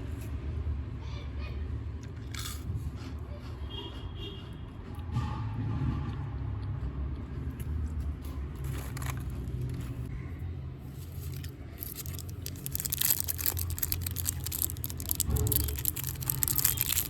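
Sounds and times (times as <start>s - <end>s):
candy wrapper crinkling: 11.0s - 17.0s.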